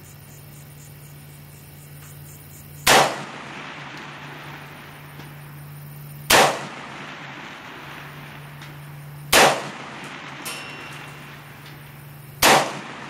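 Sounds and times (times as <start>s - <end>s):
rifle shots: 2.8s - 5.4s, 6.2s - 13.0s.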